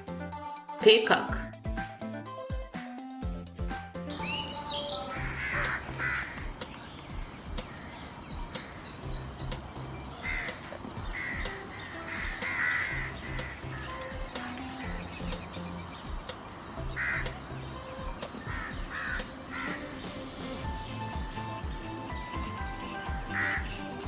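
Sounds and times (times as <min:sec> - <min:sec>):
background music: 0:00.0 - 0:24.0
peacock calling: 0:04.1 - 0:24.0.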